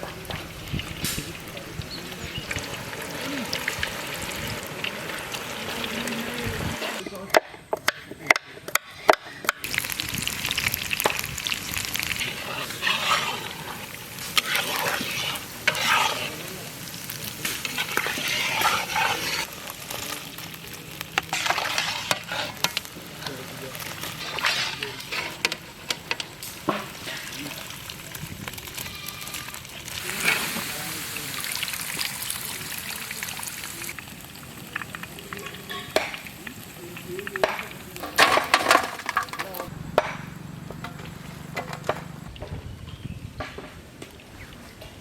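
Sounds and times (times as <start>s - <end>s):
food sizzling in a pan: 0.0s - 7.2s, 8.8s - 39.7s
scraping strokes in a pan: 8.7s - 27.9s, 28.5s - 31.2s.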